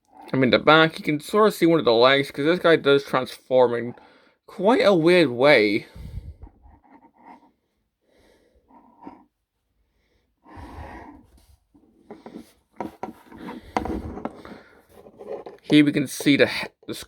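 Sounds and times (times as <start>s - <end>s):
plastic toy rubbing and rustling: 10.5s - 17.0s.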